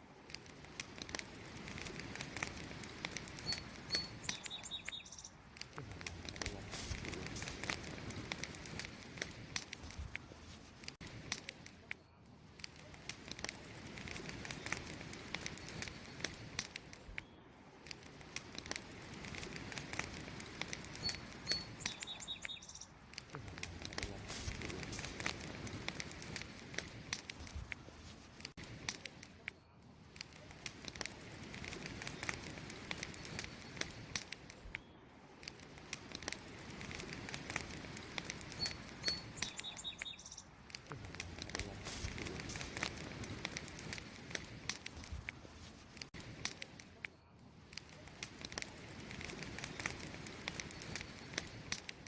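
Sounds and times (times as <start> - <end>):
campfire crackling and popping: 0.0 - 52.0
faint high chirp: 3.4 - 5.4, 20.9 - 23.0, 38.5 - 40.6.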